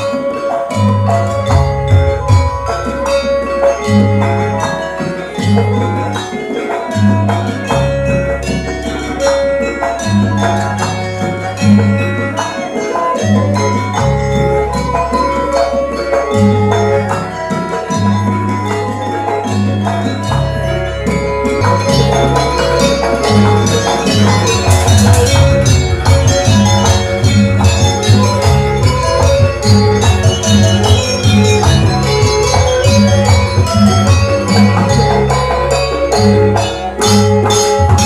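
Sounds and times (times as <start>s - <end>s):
light percussion: 0.0s - 38.0s
metallophones ringing melody: 0.0s - 38.0s.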